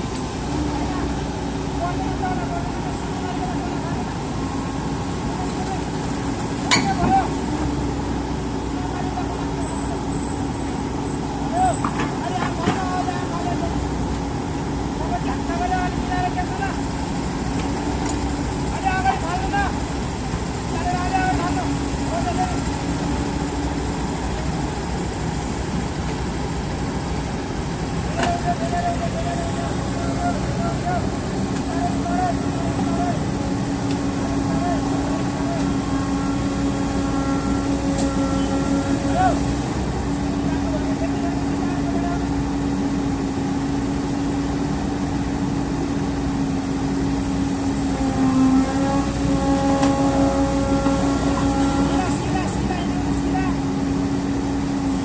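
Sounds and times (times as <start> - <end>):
diesel engine running: 0.0 - 55.0
higher tones: 27.9 - 42.6
short wavering squeaky tones: 35.1 - 39.4.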